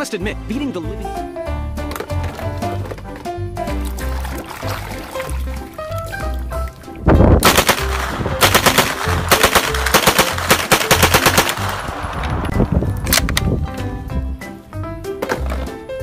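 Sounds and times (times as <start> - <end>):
background music with bass line: 0.0 - 16.0
rapid automatic gunfire: 7.4 - 12.0.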